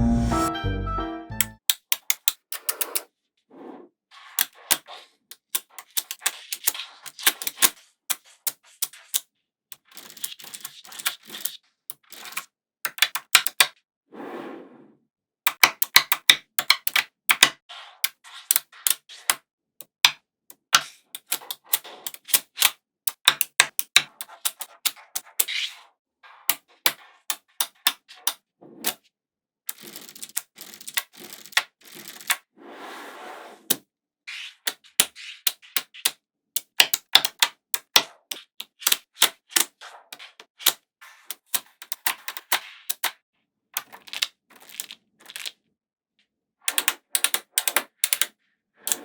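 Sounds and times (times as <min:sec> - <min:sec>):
magnetic balls clicking together: 0:04.4 - 0:13.7, 0:15.5 - 0:25.5, 0:34.7 - 0:43.1.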